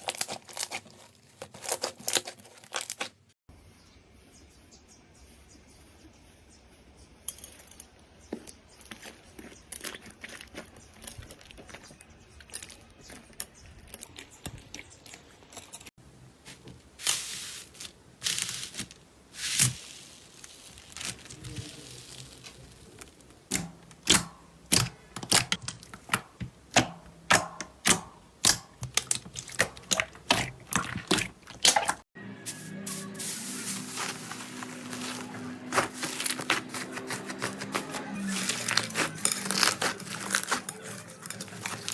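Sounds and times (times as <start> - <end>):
slime squishing: 0.0 - 3.3, 16.5 - 32.0, 33.8 - 41.9
slime crackling: 17.0 - 26.2, 27.8 - 32.0, 33.8 - 41.9.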